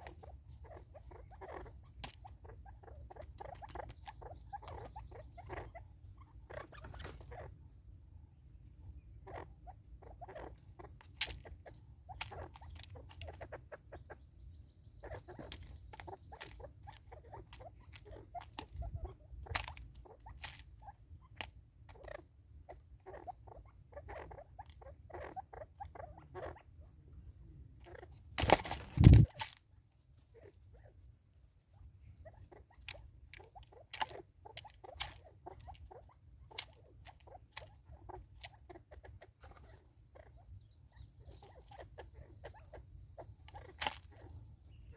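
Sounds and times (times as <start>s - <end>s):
beaks tapping on feeder: 0.0s - 5.7s, 10.4s - 20.7s, 27.8s - 29.6s.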